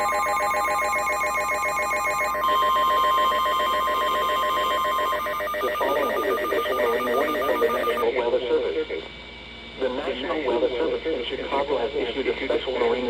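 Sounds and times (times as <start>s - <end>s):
pulsing electronic alert tone: 0.0s - 8.0s
steady high attention tone: 0.0s - 8.0s.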